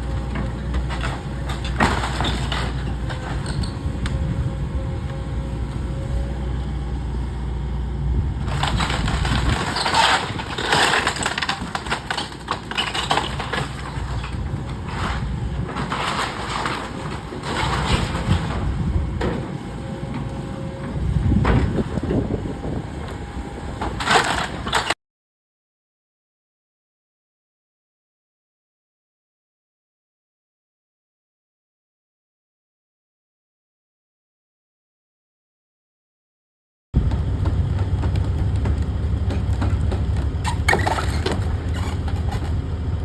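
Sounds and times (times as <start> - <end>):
low engine rumble: 0.0 - 12.1, 37.0 - 43.0
wood crunching and cracking: 8.4 - 20.3, 23.8 - 25.0, 37.0 - 43.0.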